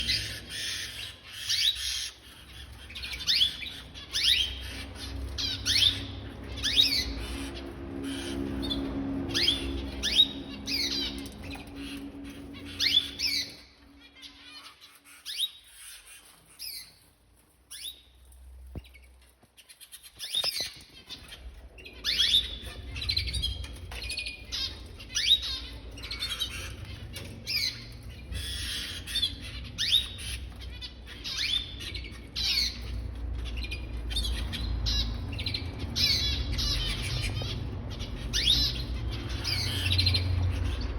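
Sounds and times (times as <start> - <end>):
birds squawking: 0.0 - 40.9.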